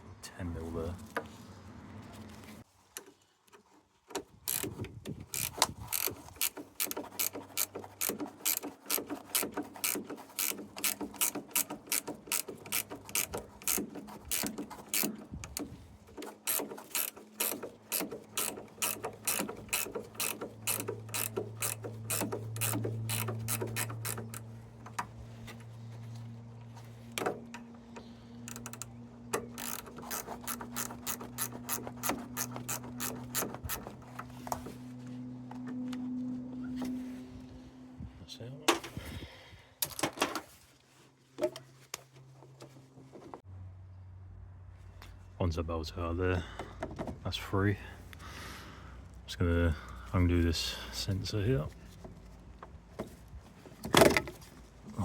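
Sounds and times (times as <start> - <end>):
ratchet wrench clicking: 4.5 - 24.5, 28.5 - 34.1.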